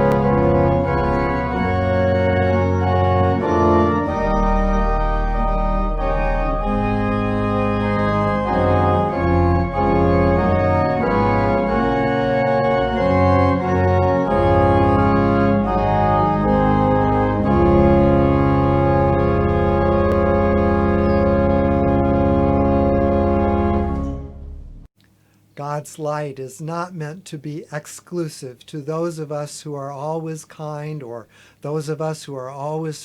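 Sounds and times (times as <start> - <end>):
organ playing sustained chords: 0.0 - 24.8
low bass line: 0.0 - 24.9.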